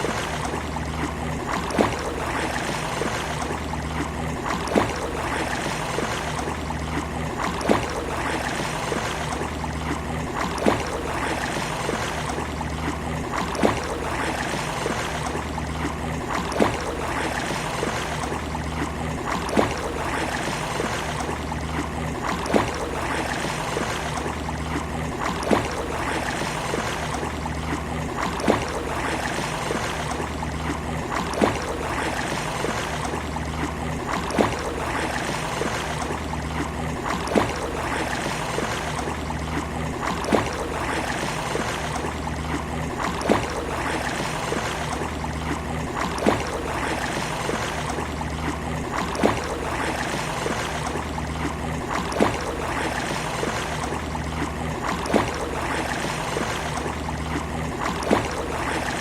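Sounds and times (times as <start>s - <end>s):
low steady hum: 0.0s - 59.0s
sea waves washing on beach: 0.0s - 59.0s.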